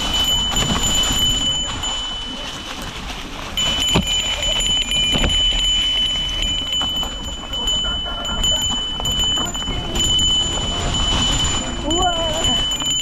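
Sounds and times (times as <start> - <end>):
bike bell ringing: 0.0 - 2.8, 3.4 - 13.0
bike knocking over ground: 0.0 - 7.7.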